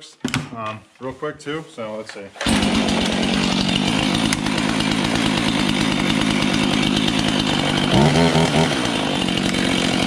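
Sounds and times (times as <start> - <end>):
chainsaw running: 2.4 - 10.0.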